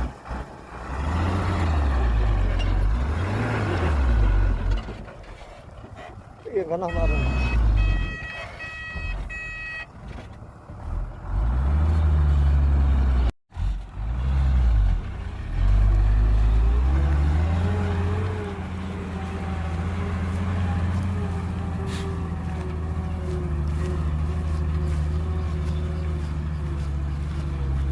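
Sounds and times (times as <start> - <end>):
heavy vehicle engine revving: 0.0 - 5.1, 10.4 - 27.9
reversing beeps: 6.9 - 9.9.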